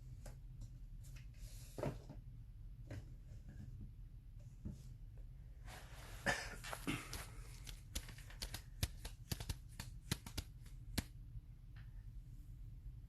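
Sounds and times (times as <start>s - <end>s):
sharp clicks and taps: 7.6s - 11.2s.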